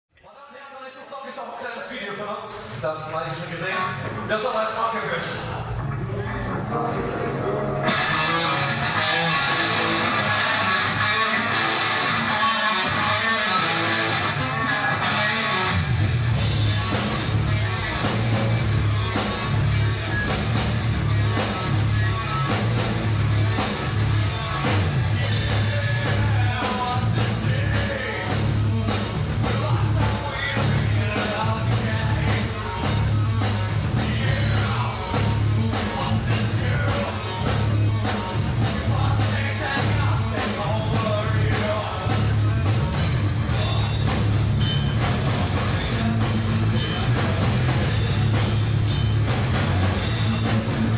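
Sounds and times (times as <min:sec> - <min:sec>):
bass guitar: 0:05.2 - 0:50.9
distorted electric guitar riffs: 0:05.2 - 0:50.9
drum kit fast beat: 0:15.6 - 0:50.9.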